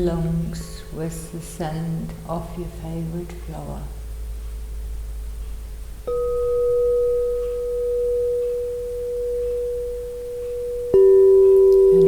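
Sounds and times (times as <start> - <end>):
struck bell-like tone: 6.1 - 12.0.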